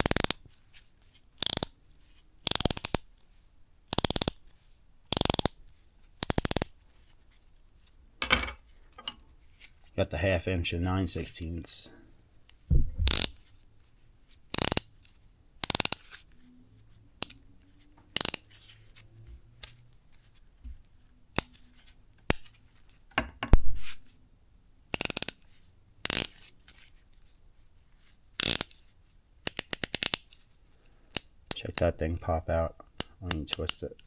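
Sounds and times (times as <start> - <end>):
ratcheting wrench clicking: 0.0 - 0.4, 1.4 - 1.7, 2.4 - 3.0, 3.9 - 4.4, 5.1 - 5.5, 6.2 - 6.7, 13.1 - 13.4, 14.5 - 14.9, 15.6 - 16.2, 18.2 - 18.5, 24.9 - 26.4, 28.4 - 28.8, 29.5 - 30.4
low knock: 12.7 - 13.1.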